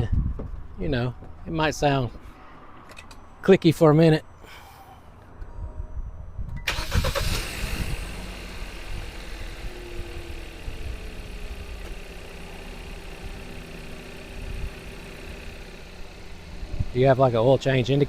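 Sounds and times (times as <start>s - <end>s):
car engine starting and idling: 6.6s - 18.0s.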